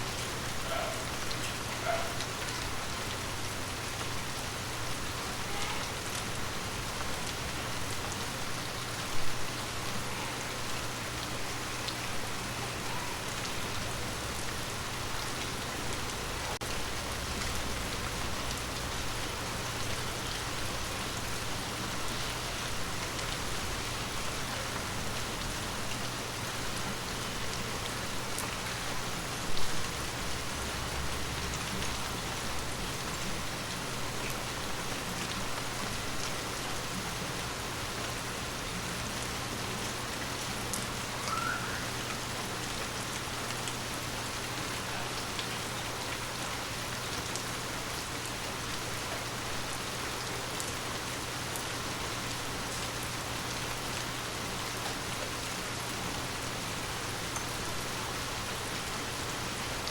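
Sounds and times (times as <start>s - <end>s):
rain on forest leaves: 0.0s - 59.9s.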